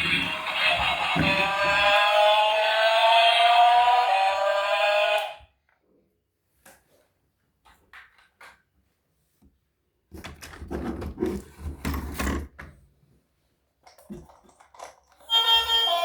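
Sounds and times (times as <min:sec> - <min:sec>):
objects clattering and scraping: 0:10.2 - 0:12.7.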